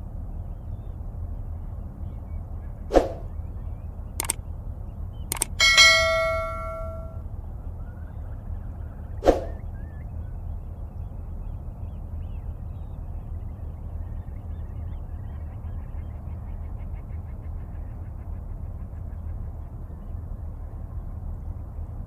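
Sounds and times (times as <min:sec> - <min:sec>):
sharp knock: 0:05.4 - 0:07.1
loud metallic clang: 0:05.4 - 0:07.2.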